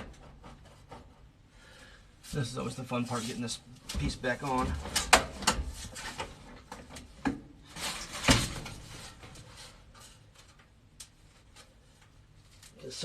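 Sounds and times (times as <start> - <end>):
faint handling sounds: 7.7 - 13.0.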